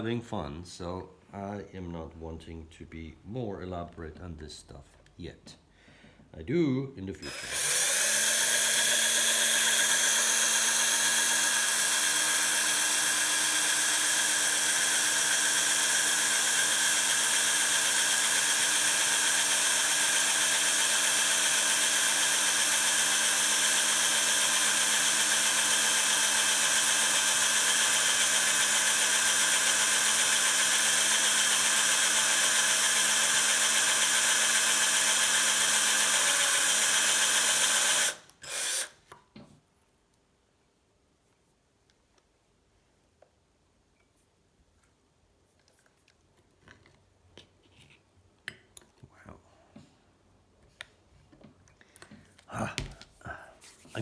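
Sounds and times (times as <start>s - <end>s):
electric drill drilling metal: 7.2s - 39.0s.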